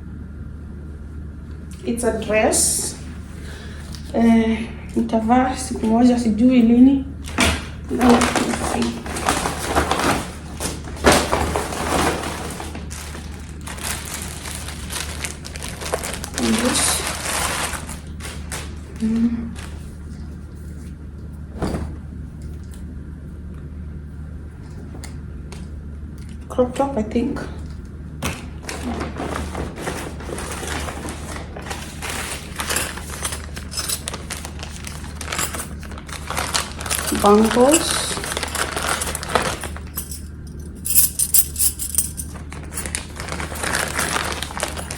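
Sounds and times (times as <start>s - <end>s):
steady low hum: 0.0s - 44.9s
packaging rustling and crinkling: 7.3s - 21.0s, 28.2s - 40.1s, 41.8s - 44.9s.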